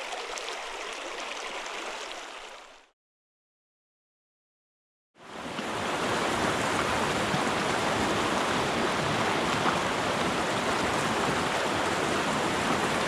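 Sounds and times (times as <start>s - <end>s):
mountain stream rushing: 5.3s - 13.0s.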